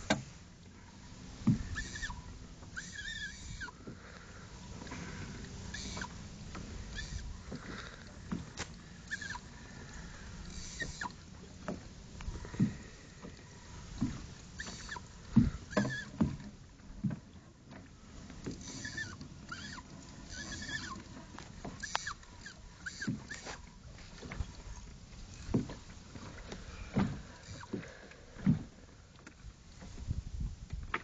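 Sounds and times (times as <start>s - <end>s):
knocks and thumps on boat: 1.3s - 2.8s, 10.8s - 31.0s.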